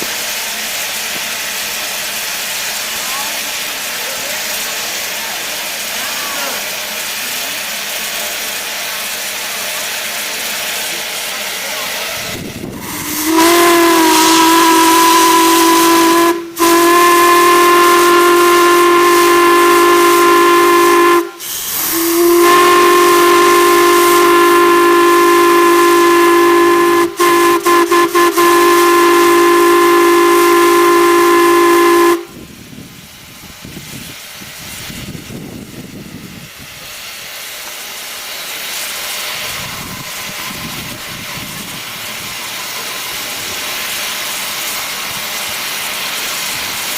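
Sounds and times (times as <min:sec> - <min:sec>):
steam hiss: 0:00.0 - 0:46.9
steam whistle blasts: 0:12.2 - 0:32.5.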